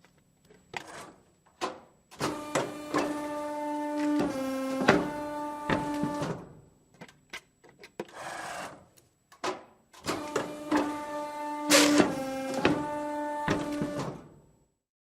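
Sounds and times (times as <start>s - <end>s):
printer motor whine: 2.2s - 6.4s, 10.0s - 14.2s.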